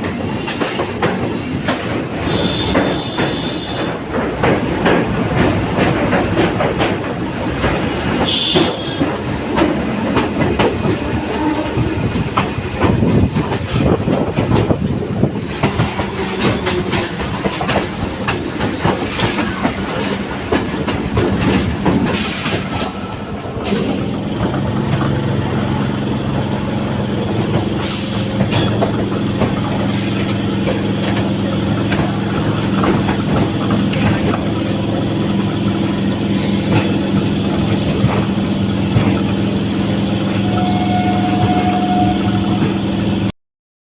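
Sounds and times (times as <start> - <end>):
train wheels clattering over rails: 0.0 - 43.3.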